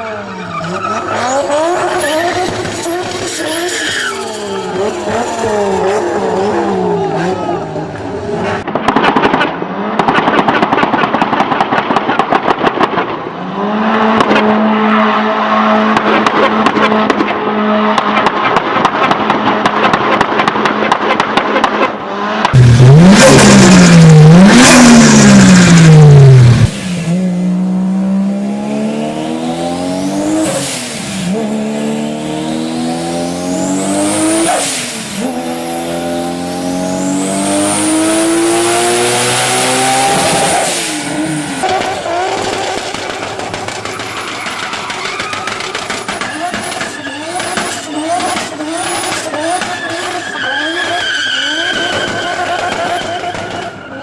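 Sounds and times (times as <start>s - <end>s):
car accelerating through gears: 22.1s - 42.4s
engine revving hard: 22.1s - 42.6s.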